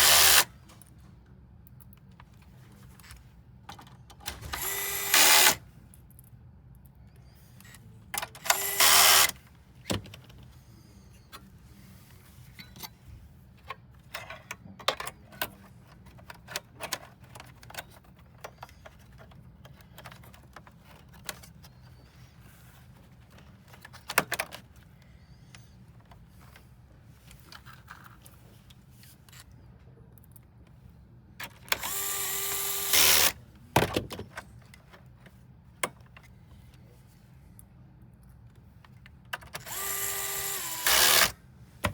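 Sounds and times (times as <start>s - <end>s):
electric screwdriver whirr: 0.0s - 0.5s, 4.3s - 5.6s, 8.4s - 9.4s, 31.8s - 33.4s, 39.6s - 41.4s.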